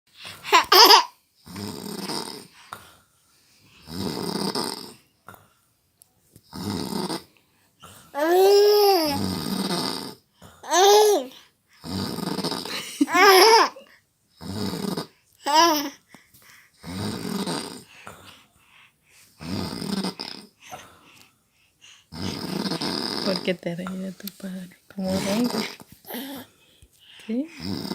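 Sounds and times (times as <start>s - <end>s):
baby laughing with high squeals: 0.5s - 1.1s
man snoring: 1.5s - 2.6s, 3.8s - 5.0s, 6.5s - 7.3s, 9.0s - 10.2s, 11.8s - 13.2s, 14.4s - 15.2s, 16.8s - 17.9s, 19.4s - 20.8s, 22.1s - 23.4s, 27.6s - 27.9s.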